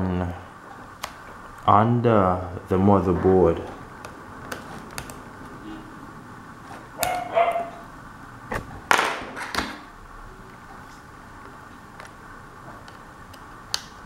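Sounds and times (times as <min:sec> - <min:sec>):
dog barking: 0:07.0 - 0:07.9.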